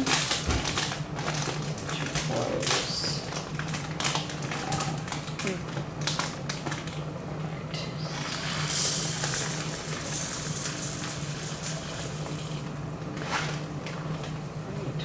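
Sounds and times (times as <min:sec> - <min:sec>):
dry rice pouring: 0:08.2 - 0:12.6.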